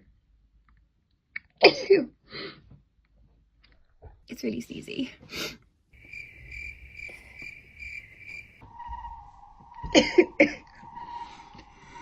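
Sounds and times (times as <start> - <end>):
high pulsing tone: 6.0 - 12.0
low steady tone: 6.0 - 12.0.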